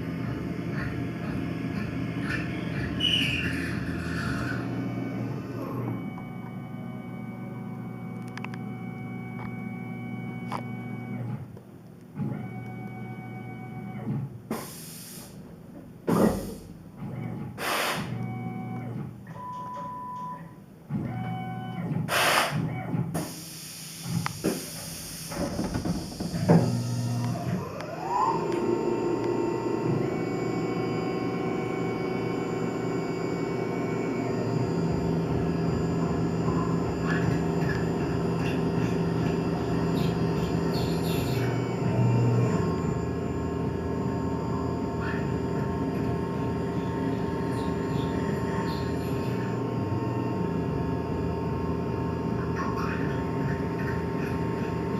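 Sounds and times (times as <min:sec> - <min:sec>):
mill motor whine: 0:00.0 - 0:54.9
hissing bursts: 0:17.6 - 0:18.1, 0:22.1 - 0:22.6.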